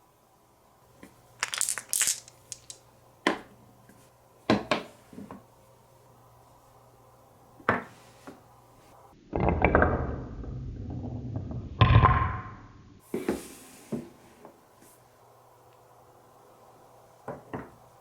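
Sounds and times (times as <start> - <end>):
marble clacks: 1.4 - 2.8
marble dropping with a knock: 1.4 - 2.8
marble rolling on wooden track: 1.4 - 2.8.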